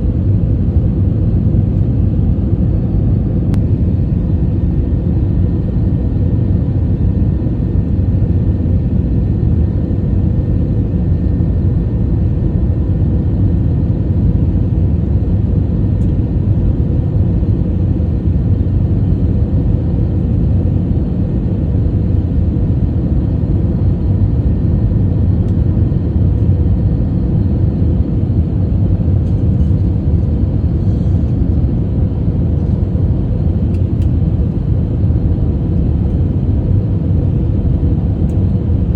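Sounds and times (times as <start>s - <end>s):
aircraft engines rumbling: 0.0s - 38.9s.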